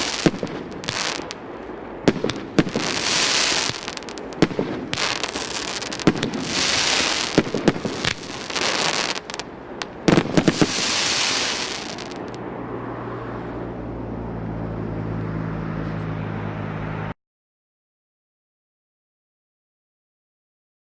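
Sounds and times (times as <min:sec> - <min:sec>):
fireworks crackling hiss: 0:00.0 - 0:01.4, 0:02.0 - 0:12.4
fireworks bangs: 0:00.0 - 0:12.4.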